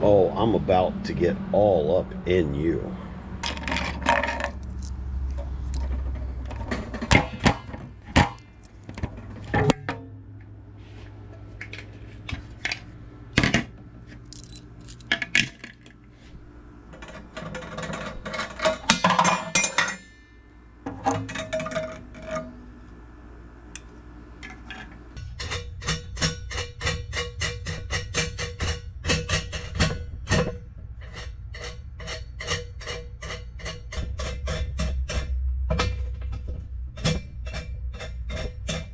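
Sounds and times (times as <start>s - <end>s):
gumball machine parts clinking: 3.4s - 5.0s, 14.3s - 15.1s.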